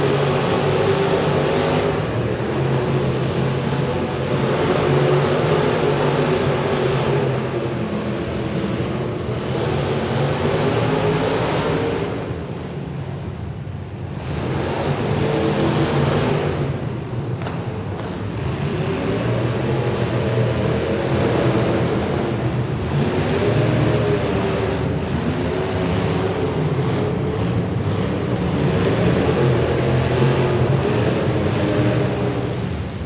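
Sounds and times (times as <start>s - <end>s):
car engines revving hard: 0.0s - 33.0s.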